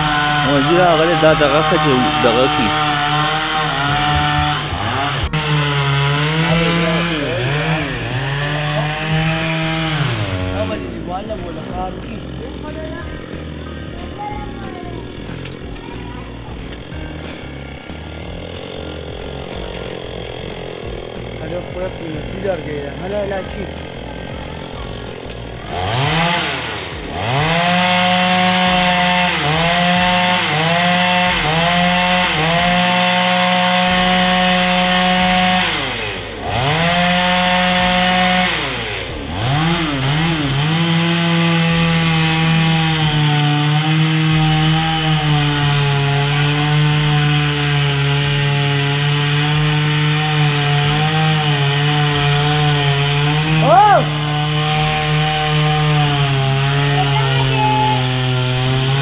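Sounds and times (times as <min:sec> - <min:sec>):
chainsaw cutting wood: 0:00.0 - 0:59.0
chainsaw engine revving: 0:00.0 - 0:59.0.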